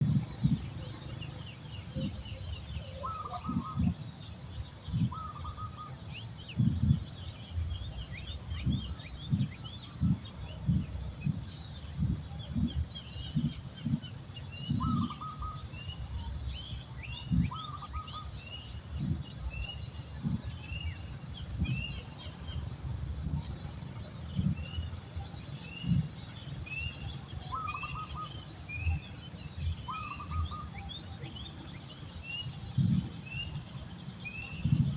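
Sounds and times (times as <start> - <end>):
high insect drone: 0.0 - 34.9
lower bird calls: 0.0 - 34.9
bird chirps: 0.1 - 34.9
low thuds: 6.4 - 15.2, 18.9 - 26.3.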